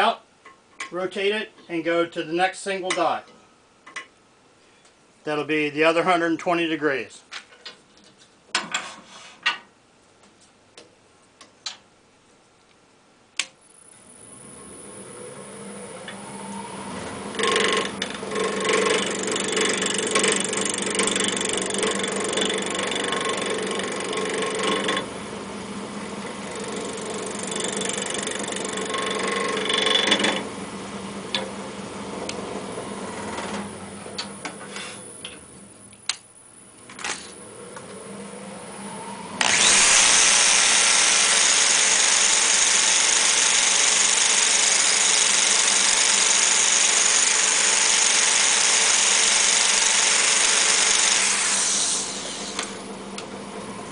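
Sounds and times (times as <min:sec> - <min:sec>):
wood lathe spinning: 0:14.8 - 0:30.5, 0:38.9 - 0:53.3
turning tool scraping wood: 0:17.0 - 0:25.1.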